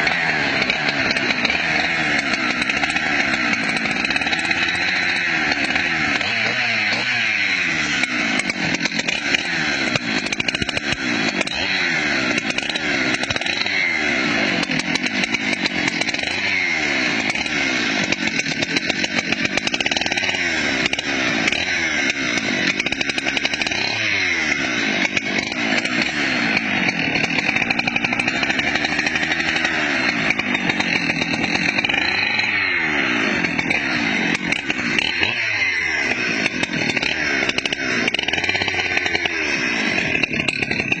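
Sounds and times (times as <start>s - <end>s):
chainsaw engine running: 0.0s - 41.0s.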